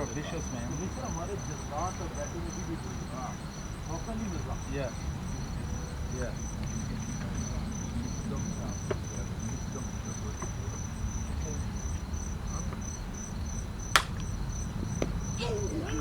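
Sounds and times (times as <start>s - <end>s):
insects chirping: 0.0s - 16.0s
sharp crack: 13.9s - 14.3s.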